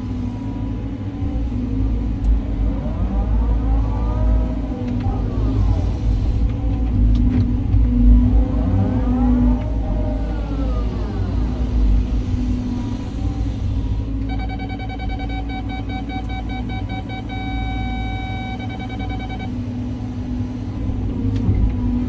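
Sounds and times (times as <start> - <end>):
excavator diesel engine rumbling: 0.0 - 22.0
electronic alarm beeping: 14.3 - 19.6.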